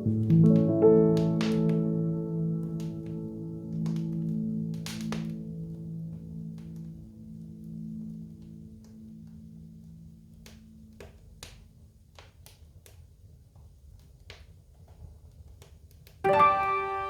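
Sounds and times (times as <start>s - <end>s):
piano melody: 0.0s - 9.9s, 16.2s - 17.0s
wood fire crackling and popping: 0.2s - 2.0s, 2.6s - 16.8s.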